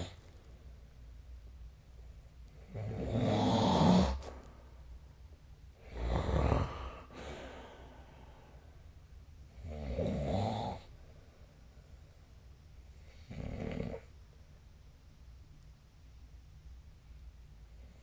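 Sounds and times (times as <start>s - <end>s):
quiet breathing: 1.8s - 14.2s
person snoring: 2.6s - 4.4s, 5.8s - 8.1s, 9.6s - 10.9s, 13.2s - 14.1s.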